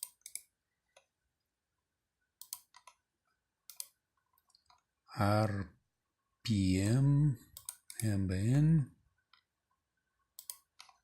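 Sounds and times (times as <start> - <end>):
computer mouse clicking: 0.0 - 1.1, 2.4 - 3.0, 3.7 - 4.9, 7.6 - 8.1, 10.4 - 11.0.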